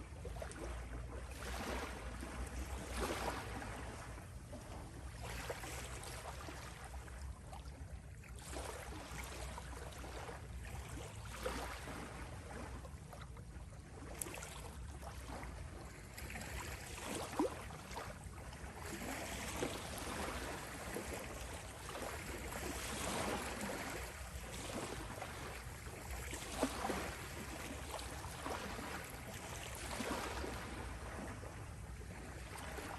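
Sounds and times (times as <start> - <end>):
water splashes: 0.1 - 32.9
water sloshing: 14.0 - 32.9.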